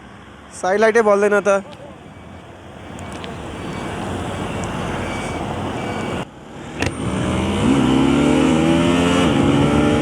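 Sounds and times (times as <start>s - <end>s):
road noise: 0.0s - 10.0s
rushing wind: 1.2s - 10.0s
motorcycle engine revving: 6.9s - 10.0s.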